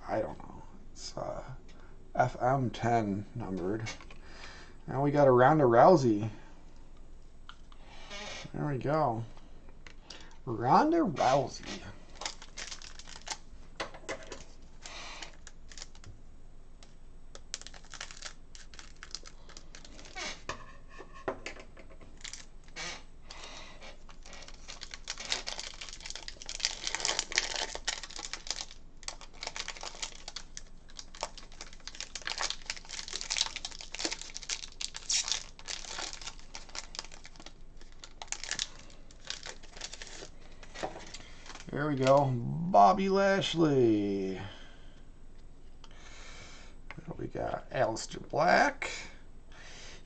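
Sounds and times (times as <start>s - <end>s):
foil wrapper crinkling and tearing: 11.2s - 13.5s, 14.2s - 16.1s, 17.3s - 20.5s, 22.2s - 22.5s, 23.3s - 42.6s.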